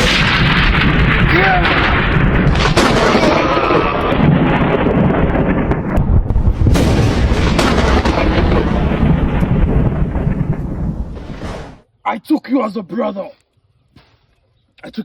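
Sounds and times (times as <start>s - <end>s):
dramatic booming rumble: 0.0s - 11.9s
sharp cracks: 0.0s - 11.9s.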